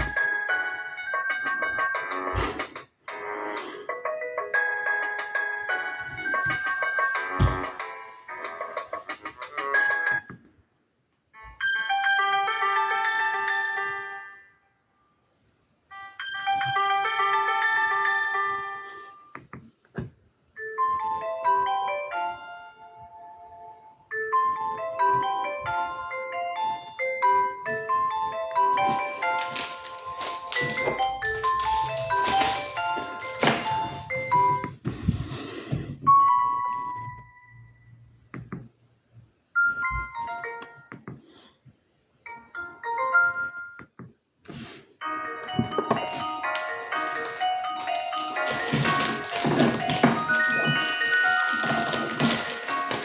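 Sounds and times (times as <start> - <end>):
mobile phone ringtone melody: 11.6 - 14.4, 15.9 - 19.2, 20.6 - 34.8, 36.1 - 38.0, 39.6 - 40.9, 42.3 - 43.8, 45.0 - 52.4.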